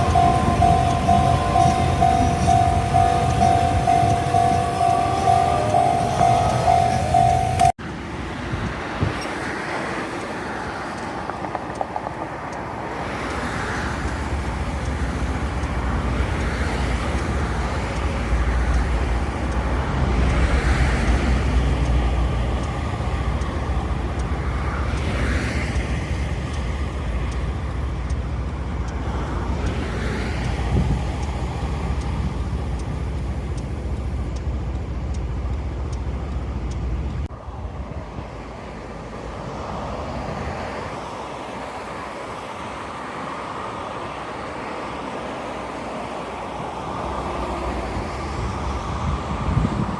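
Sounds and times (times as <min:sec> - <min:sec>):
train rumbling by: 0:00.0 - 0:07.8, 0:14.3 - 0:40.9.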